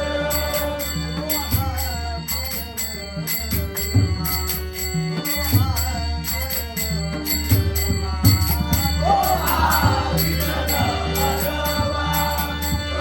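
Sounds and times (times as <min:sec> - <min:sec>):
person singing: 0:00.0 - 0:04.6, 0:05.2 - 0:13.0
sustained accompaniment: 0:00.0 - 0:13.0
small hand cymbals: 0:00.3 - 0:13.0
drum beat: 0:05.4 - 0:13.0.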